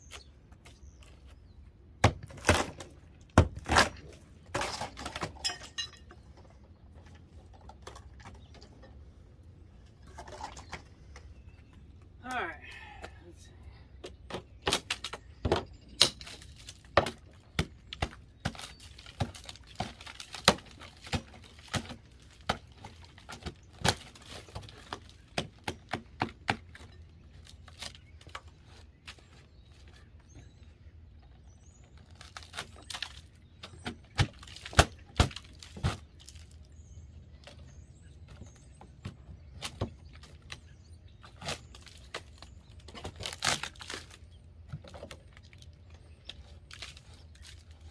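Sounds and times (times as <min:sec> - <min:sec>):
wood knocking and cracking: 0:14.0 - 0:29.4.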